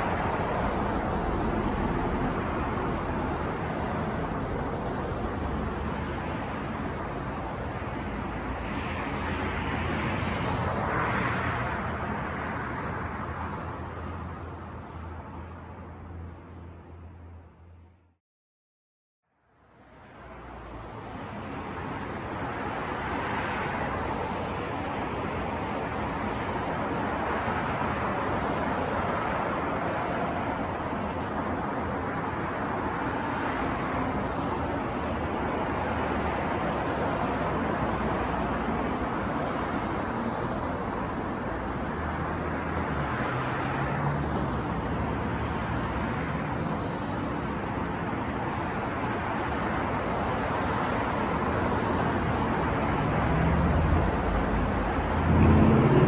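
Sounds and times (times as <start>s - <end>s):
passing cars: 0.0s - 17.9s, 19.7s - 56.0s
heavy vehicle engine rumble: 53.0s - 56.0s.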